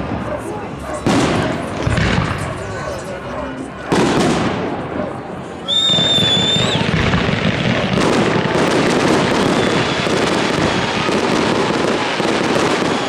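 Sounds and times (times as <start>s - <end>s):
fireworks crackling and popping: 1.0s - 3.0s, 3.9s - 4.8s, 5.7s - 13.0s.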